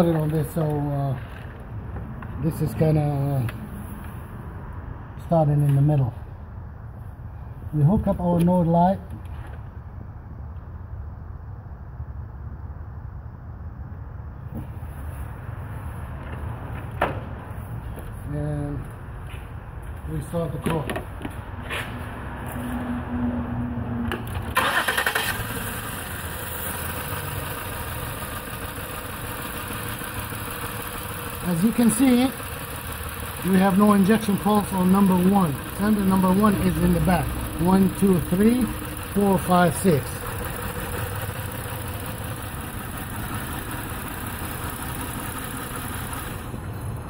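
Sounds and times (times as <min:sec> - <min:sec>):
starter cranking engine: 0:24.3 - 0:46.6
car engine misfiring idle: 0:24.5 - 0:46.8.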